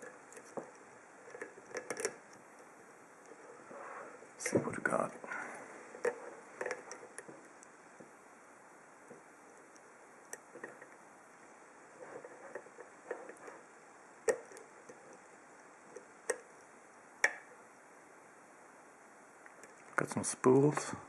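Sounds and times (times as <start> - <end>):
lock pick scraping: 0.0 - 2.4.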